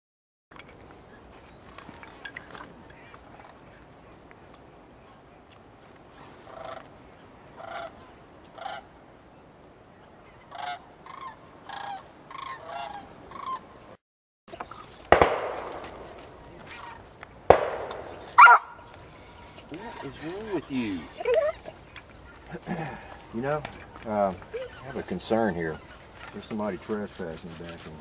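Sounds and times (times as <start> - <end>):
geese honking: 7.6 - 8.9, 10.5 - 13.7, 15.1 - 26.6
shotgun shot: 15.0 - 16.9, 17.5 - 18.7.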